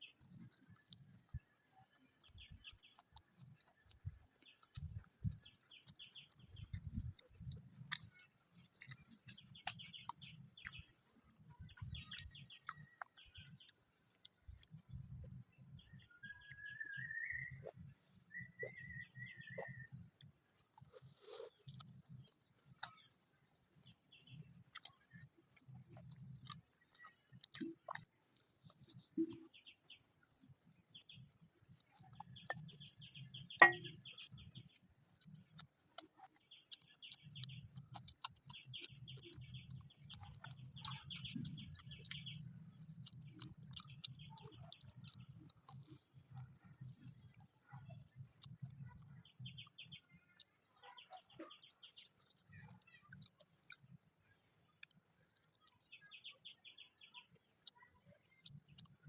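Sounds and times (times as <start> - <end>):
chewing and crunching food: 0.0 - 59.0
birds chirping: 15.5 - 20.0, 32.0 - 35.5.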